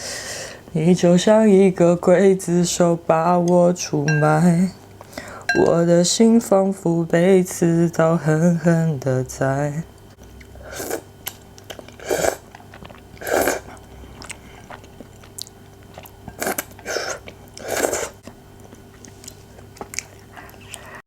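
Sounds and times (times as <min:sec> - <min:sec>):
person chewing: 0:10.3 - 0:21.0.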